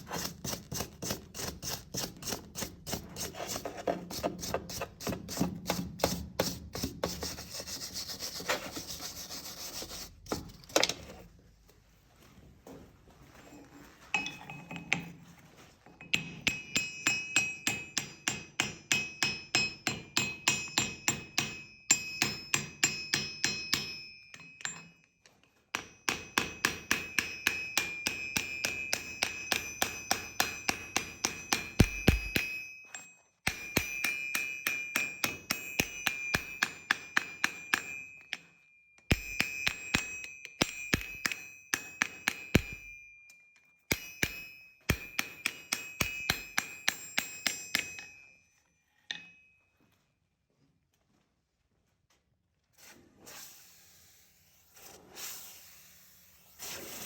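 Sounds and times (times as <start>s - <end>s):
hammer striking steel on anvil: 16.1s - 25.0s, 25.7s - 48.4s, 49.1s - 49.5s.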